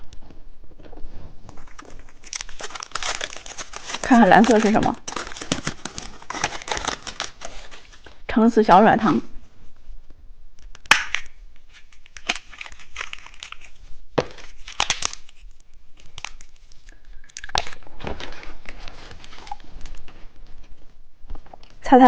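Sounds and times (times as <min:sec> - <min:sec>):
candy wrapper crinkling: 0:01.6 - 0:08.1, 0:10.6 - 0:17.9.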